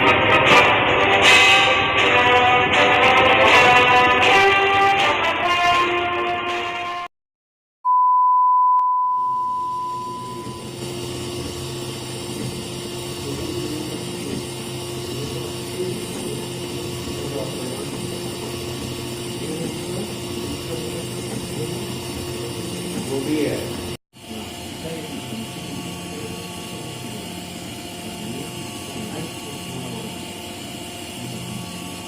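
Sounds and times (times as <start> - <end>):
fans humming: 0.0 - 6.3, 9.3 - 32.0
electronic beep: 7.9 - 10.8
printer motors whining: 10.1 - 32.0.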